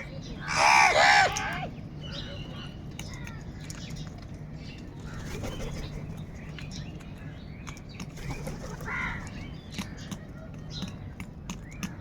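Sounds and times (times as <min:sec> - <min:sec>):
crow cawing: 0:00.4 - 0:01.7
small ticks and rustles: 0:02.8 - 0:05.2, 0:06.1 - 0:12.0.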